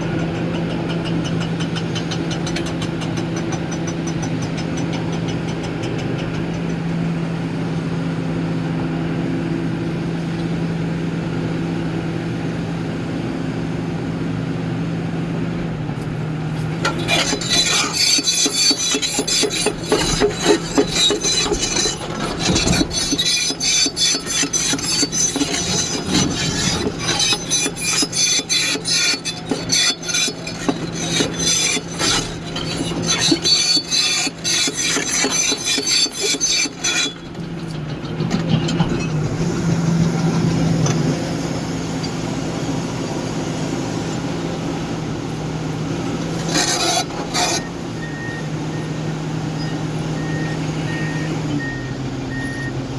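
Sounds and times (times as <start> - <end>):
diesel engine running: 0.0 - 52.9
rock and steel scraping: 16.0 - 41.1, 45.9 - 48.4.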